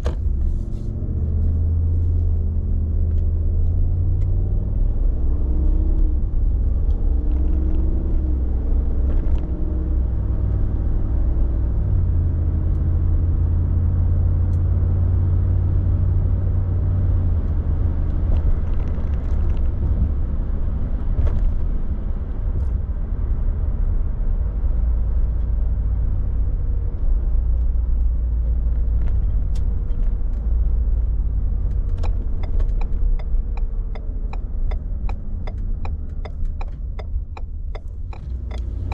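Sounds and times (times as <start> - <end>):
regular ticks: 31.8 - 38.9.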